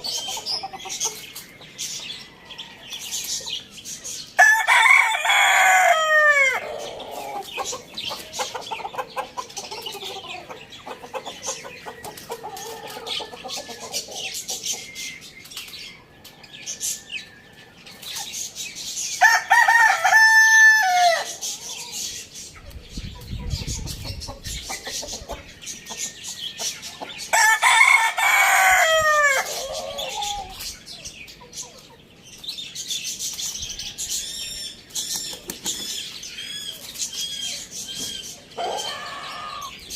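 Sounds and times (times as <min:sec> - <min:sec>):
hens clucking: 0:00.0 - 0:03.7, 0:04.6 - 0:15.1, 0:21.1 - 0:30.8, 0:35.2 - 0:39.9
birds chirping: 0:00.0 - 0:39.9
rooster crowing: 0:04.4 - 0:07.4, 0:19.2 - 0:21.4, 0:27.3 - 0:30.3, 0:38.6 - 0:39.8.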